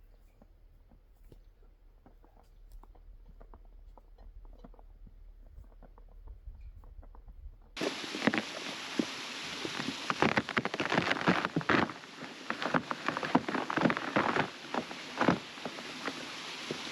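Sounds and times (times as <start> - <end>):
faint small clicks and crackles: 0.0 - 16.9
waterfall rushing: 7.8 - 16.9.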